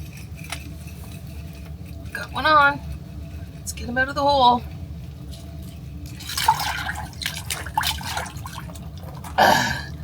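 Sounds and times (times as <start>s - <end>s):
water splashing and dripping: 6.1s - 9.4s.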